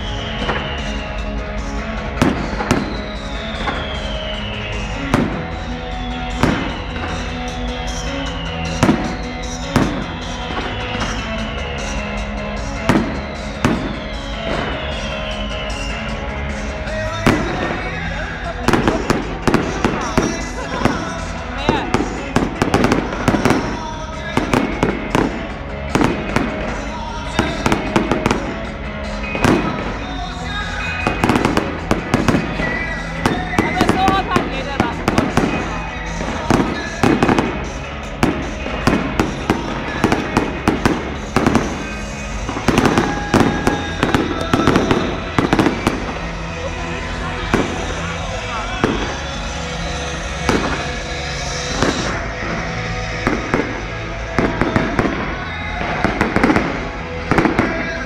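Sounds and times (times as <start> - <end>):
fireworks bangs and crackles: 0.0 - 58.0
music playing: 0.0 - 58.0.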